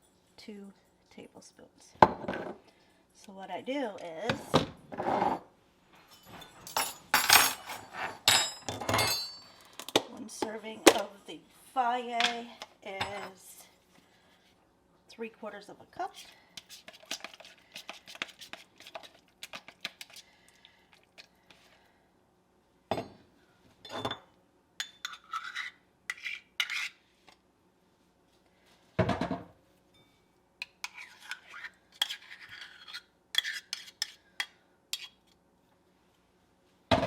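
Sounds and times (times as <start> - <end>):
spoon clinking against a bowl: 6.2 - 9.5, 24.8 - 25.4.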